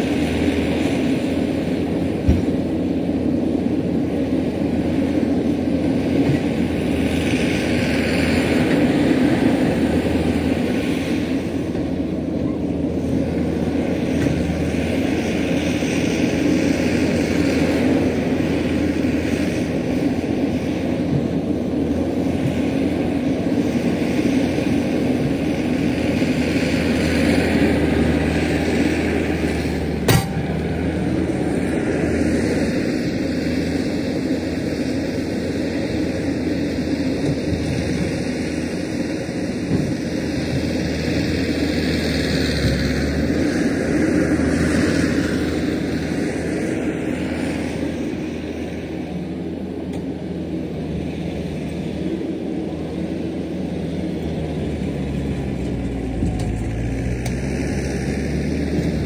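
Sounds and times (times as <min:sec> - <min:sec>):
diesel engine running: 0:00.0 - 0:59.0
sharp metal clank: 0:30.0 - 0:30.7.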